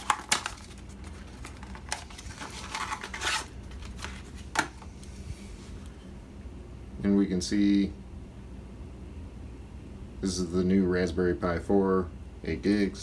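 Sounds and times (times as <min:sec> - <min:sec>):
cardboard packaging clicks and taps: 0:00.0 - 0:04.9
cardboard rustling and tearing: 0:00.0 - 0:04.9.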